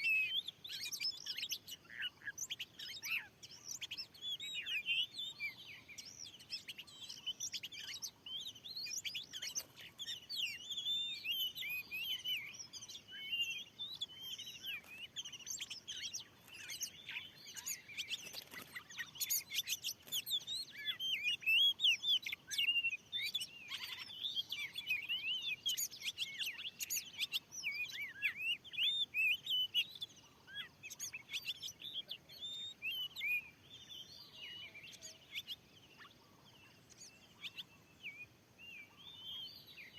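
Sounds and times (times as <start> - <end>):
bird singing chirps and whistles: 0.0 - 39.9.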